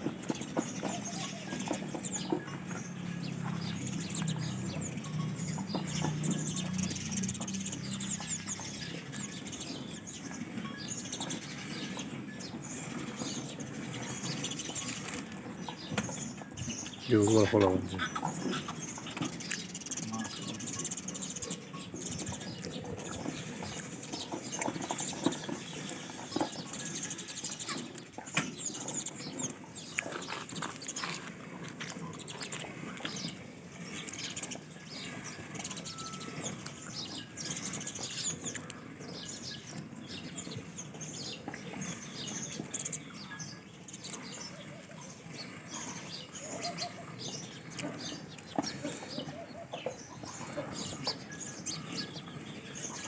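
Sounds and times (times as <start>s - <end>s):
farmyard background: 0.0s - 53.0s
small birds chirping: 0.0s - 53.0s.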